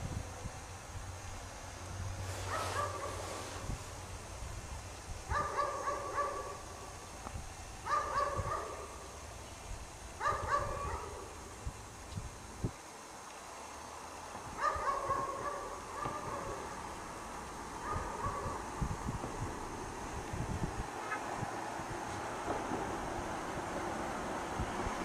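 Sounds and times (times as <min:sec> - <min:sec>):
dog barking: 0:02.5 - 0:03.2, 0:05.3 - 0:06.6, 0:07.9 - 0:09.0, 0:10.2 - 0:11.3, 0:14.6 - 0:16.6, 0:17.8 - 0:18.6.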